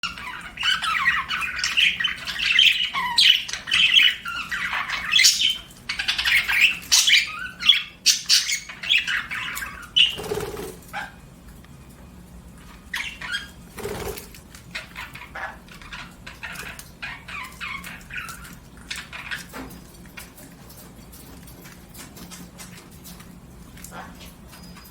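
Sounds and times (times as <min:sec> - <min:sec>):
budgerigars chirping: 0:00.0 - 0:11.2, 0:12.9 - 0:20.4.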